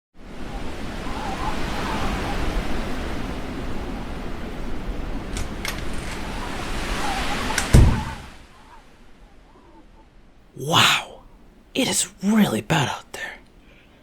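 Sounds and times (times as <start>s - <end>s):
snowstorm wind blowing: 0.4s - 8.4s.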